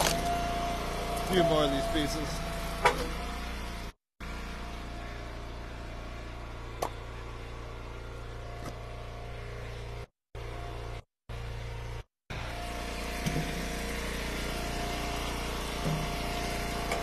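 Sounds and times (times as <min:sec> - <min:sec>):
wood splitter engine running: 0:00.0 - 0:17.0.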